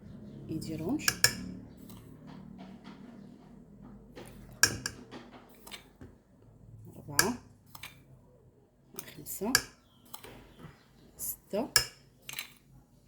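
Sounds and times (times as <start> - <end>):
metal spoon clinking and scraping: 0.9 - 2.2, 4.3 - 5.9, 11.7 - 12.6.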